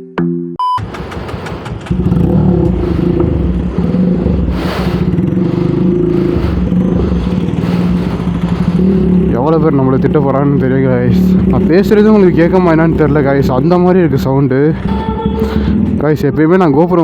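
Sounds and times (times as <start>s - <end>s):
motorcycle loud exhaust running: 0.8s - 17.0s.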